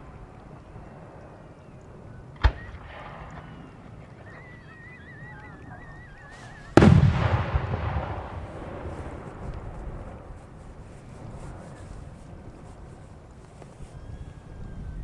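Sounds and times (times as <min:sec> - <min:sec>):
firework bang: 0:02.4 - 0:04.4, 0:06.3 - 0:10.1
firework whistle: 0:02.4 - 0:09.0
firework shell burst rumbling: 0:06.3 - 0:10.8.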